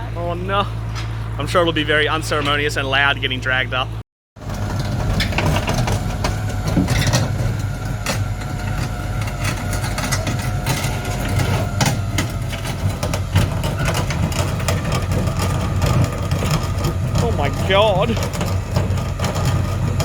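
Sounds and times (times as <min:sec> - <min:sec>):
truck engine running: 0:00.0 - 0:20.0
metal clanks and knocks: 0:04.4 - 0:20.0.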